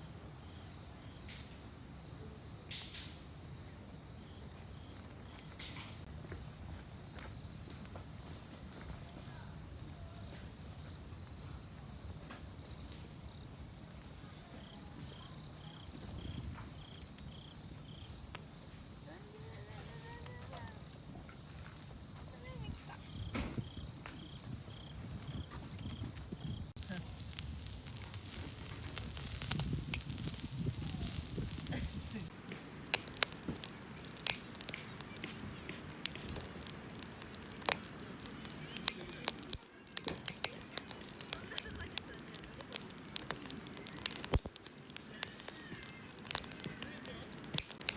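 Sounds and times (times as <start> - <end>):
insects chirping: 0.0 - 1.3, 3.4 - 47.9
wood fire crackling and popping: 2.6 - 3.4, 4.8 - 47.9
lower-pitched insect chirping: 14.6 - 32.3.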